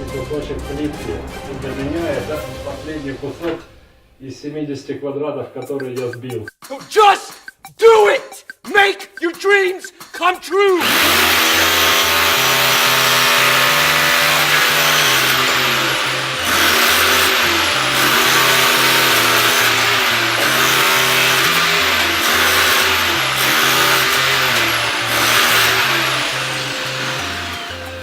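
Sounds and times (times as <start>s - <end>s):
sustained synth chords: 10.8s - 28.0s
synth bass line: 10.8s - 28.0s.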